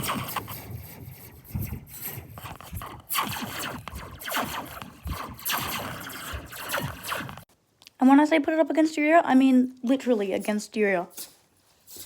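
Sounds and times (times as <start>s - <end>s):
metal slinky zapping tones: 0.0s - 7.4s.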